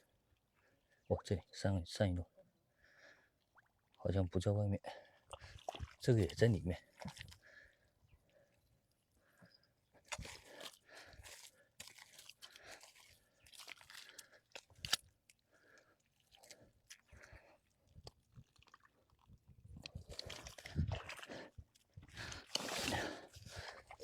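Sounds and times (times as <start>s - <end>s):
hands digging in mud: 10.1s - 15.2s, 19.8s - 24.0s.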